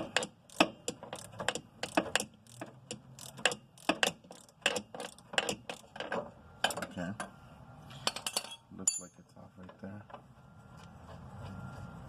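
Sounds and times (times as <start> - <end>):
wrench clicking on metal: 0.0 - 6.0.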